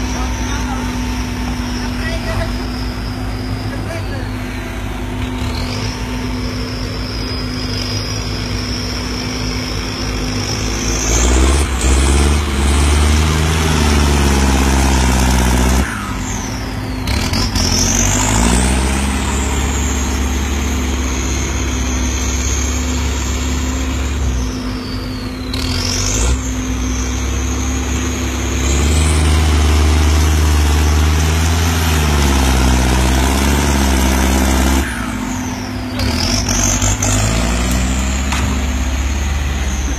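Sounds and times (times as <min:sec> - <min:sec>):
high turbo whistle: 0:00.0 - 0:12.3, 0:13.6 - 0:30.3
diesel tractor engine under load: 0:00.0 - 0:39.9.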